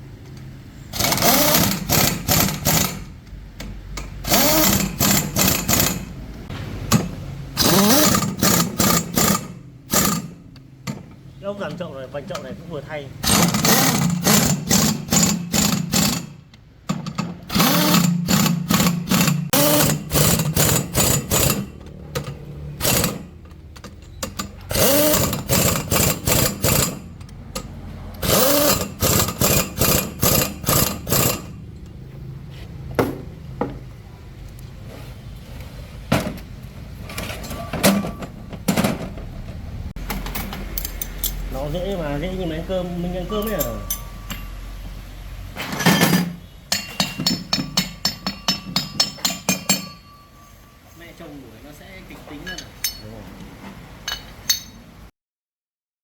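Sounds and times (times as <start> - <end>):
power tool rattling: 0.9 - 3.1, 4.2 - 6.1, 6.9 - 10.4, 13.2 - 16.4, 17.0 - 23.4, 24.0 - 31.5.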